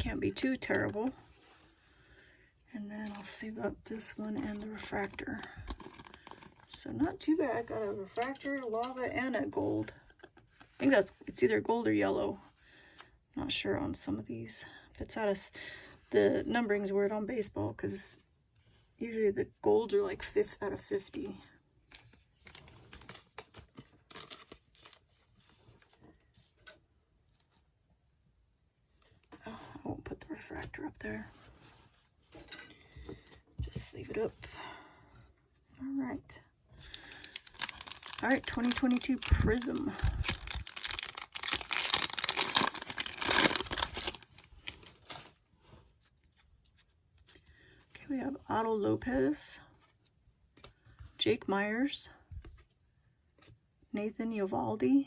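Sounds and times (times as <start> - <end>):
plastic card sleeves crinkling: 4.0 - 9.0, 22.0 - 26.4, 36.8 - 45.4.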